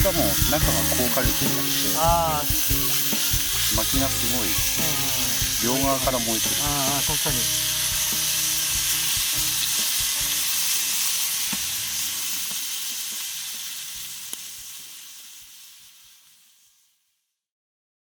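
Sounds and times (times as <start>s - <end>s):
firewood crackling and popping: 0.0s - 16.6s.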